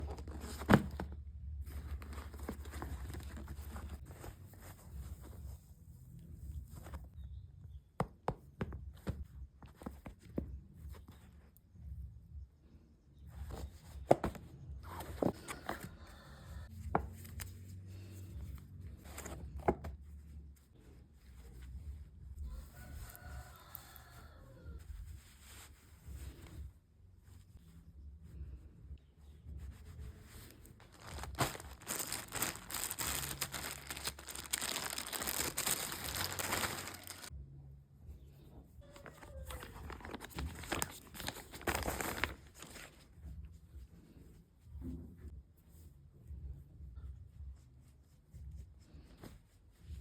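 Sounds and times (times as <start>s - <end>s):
rustling: 0.0s - 7.2s, 24.8s - 27.8s, 29.5s - 37.3s, 38.9s - 44.4s.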